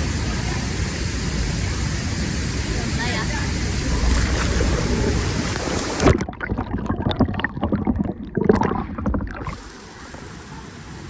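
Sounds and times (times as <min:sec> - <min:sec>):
steady rush of water: 0:00.0 - 0:11.0
muffled underwater bubbling: 0:02.8 - 0:10.4
water splashing and gurgling: 0:03.4 - 0:10.4.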